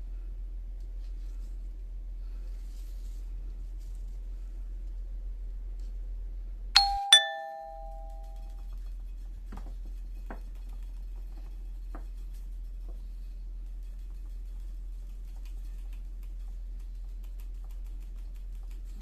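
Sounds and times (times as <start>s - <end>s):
two-note ding-dong chime: 6.8s - 8.5s.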